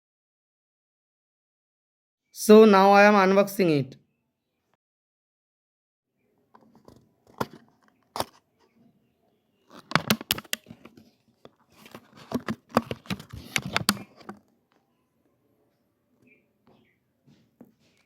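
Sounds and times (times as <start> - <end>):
packaging snapping: 9.7 - 10.8.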